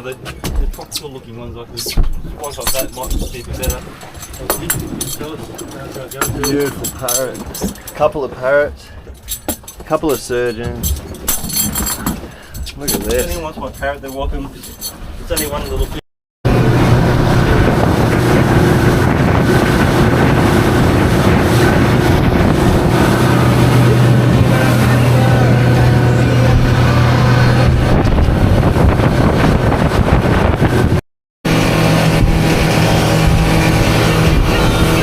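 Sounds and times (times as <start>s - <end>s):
motorboat engine running: 16.5s - 35.0s.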